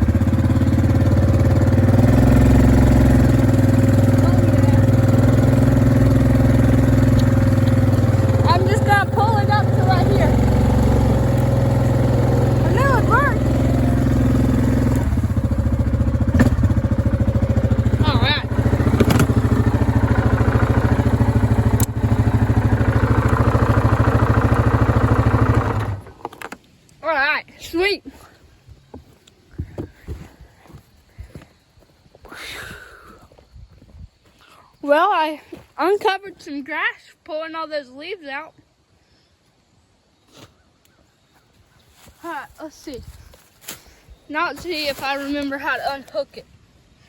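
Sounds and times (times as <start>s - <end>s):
engine running steadily: 0.0s - 26.6s.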